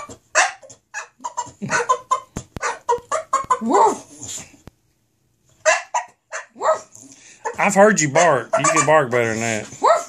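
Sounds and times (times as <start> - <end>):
dog grunting barks: 0.0 - 2.0
dog whining yodel: 0.0 - 4.5, 5.7 - 7.7, 9.7 - 10.0.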